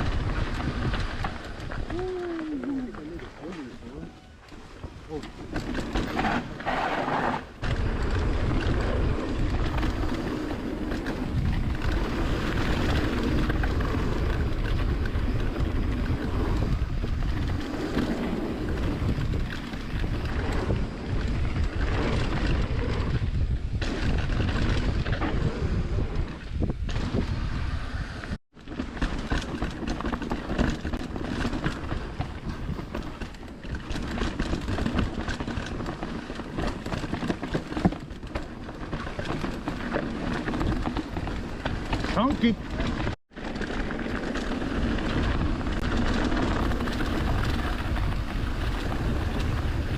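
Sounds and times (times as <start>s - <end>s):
wind buffeting microphone: 0.0s - 4.1s, 7.6s - 28.4s, 44.6s - 49.9s
bike rattling on dirt trail: 0.0s - 49.9s.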